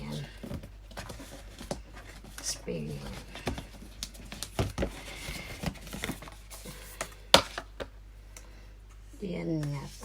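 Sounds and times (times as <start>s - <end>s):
light taps and clicks of packaging: 3.4s - 7.9s.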